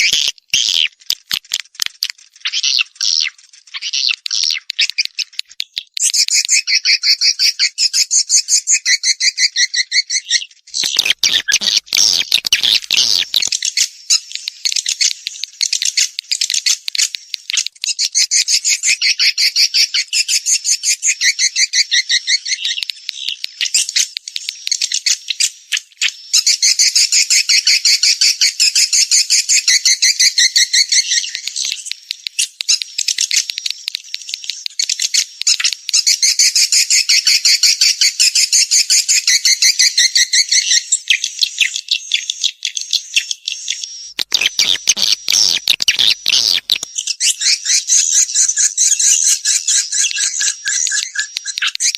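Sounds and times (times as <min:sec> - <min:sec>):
swiftlet chirping twitters: 0:10.7 - 0:25.5, 0:26.4 - 0:40.8, 0:43.7 - 0:51.9.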